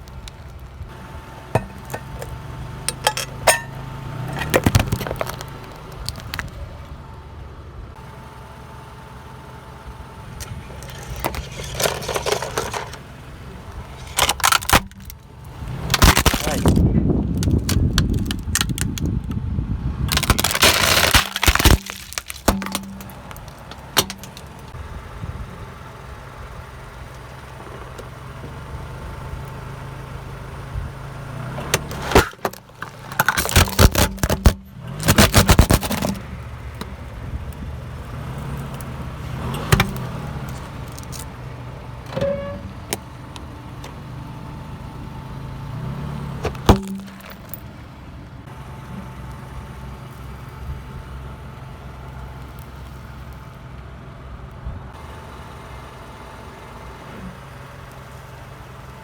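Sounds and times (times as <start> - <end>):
crunching and cracking: 0.0 - 0.9, 1.6 - 6.9, 10.4 - 19.3, 20.1 - 24.8, 31.8 - 41.4, 46.4 - 47.7
car engine running slowly: 0.0 - 59.0
tyres crushing objects: 1.5 - 6.7, 10.4 - 19.2, 20.1 - 24.8, 31.6 - 37.0, 38.1 - 41.4, 46.4 - 47.8.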